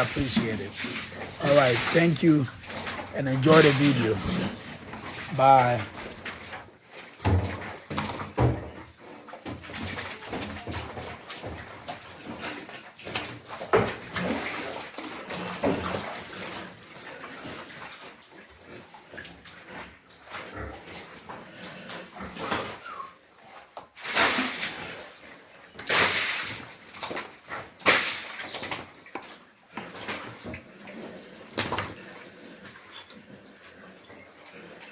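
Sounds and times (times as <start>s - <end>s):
pigs grunting: 0.0s - 6.0s.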